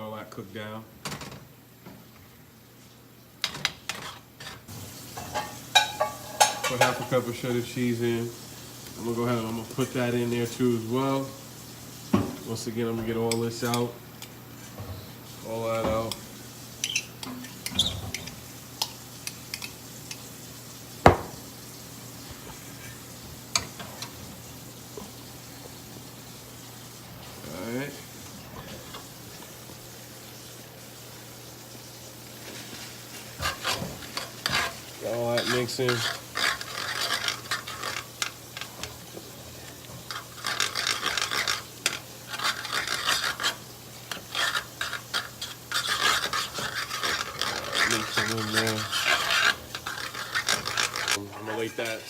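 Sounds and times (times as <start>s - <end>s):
utensil clinking against cookware: 5.2s - 7.2s, 13.0s - 14.4s, 33.4s - 39.0s, 39.7s - 52.0s.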